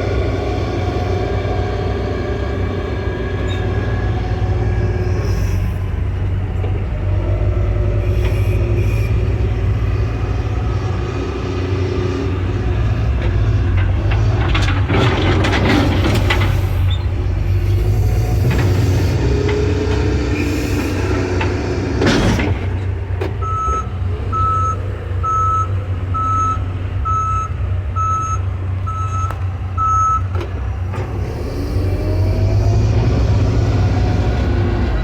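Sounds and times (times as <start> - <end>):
diesel engine running: 0.0 - 35.0
backup alarm beeping: 23.4 - 30.3.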